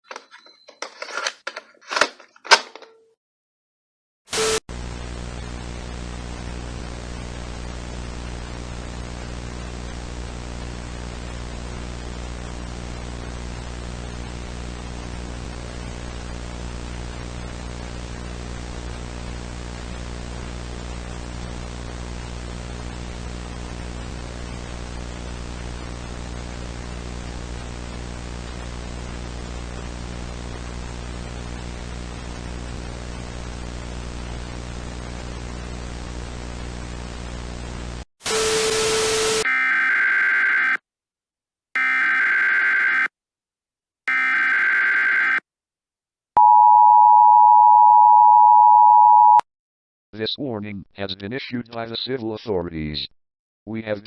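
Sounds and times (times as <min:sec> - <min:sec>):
screeching two-tone data bursts: 0:44.1 - 0:45.4.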